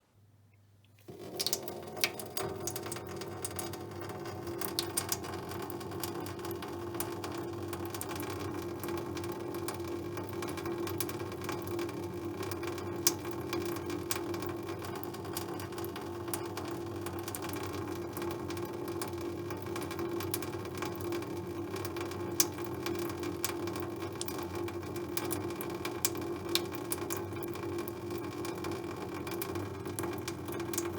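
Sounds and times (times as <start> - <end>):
tap water trickling into metal sink: 0.9 - 30.9.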